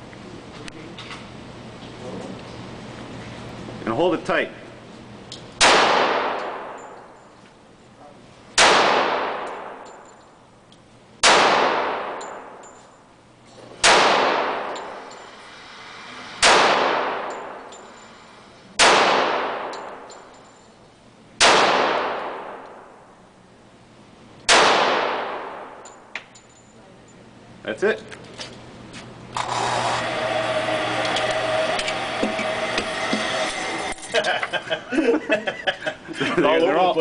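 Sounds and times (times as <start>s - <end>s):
handgun shots echoing: 5.6s - 7.0s, 8.6s - 10.0s, 11.2s - 12.6s, 13.8s - 15.0s, 16.4s - 17.6s, 18.8s - 20.1s, 21.4s - 22.8s, 24.4s - 26.0s.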